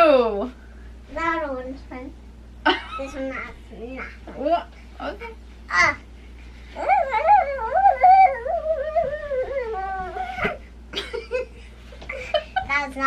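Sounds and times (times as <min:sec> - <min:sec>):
child whining: 0:06.8 - 0:10.6.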